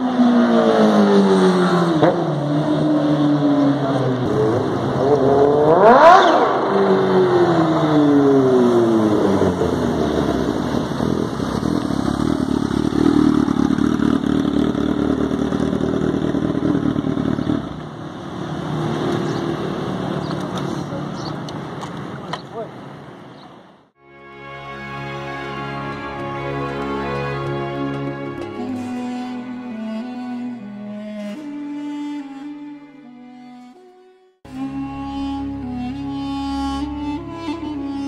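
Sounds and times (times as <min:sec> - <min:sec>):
motorcycle engine revving: 0:00.0 - 0:21.3.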